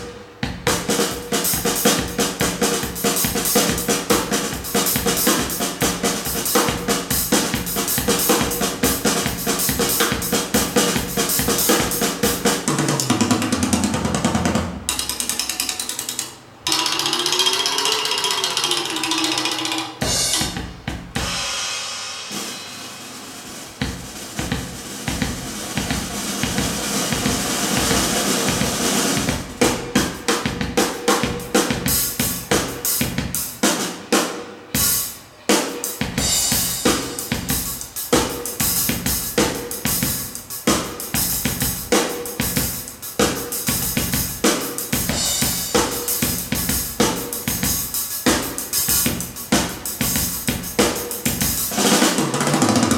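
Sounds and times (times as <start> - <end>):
drum beat: 0.0 - 16.0, 16.7 - 52.9
cymbal wash: 14.9 - 33.0.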